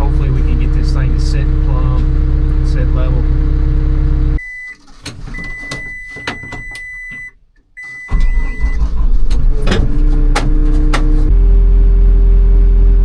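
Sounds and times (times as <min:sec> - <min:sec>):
engine running: 0:00.0 - 0:13.0
sharp clicks and knocks: 0:04.5 - 0:11.3.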